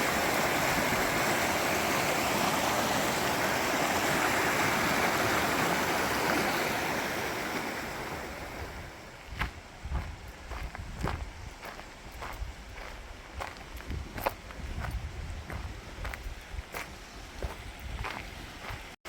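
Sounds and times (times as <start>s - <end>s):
river water rushing: 0.0s - 9.2s.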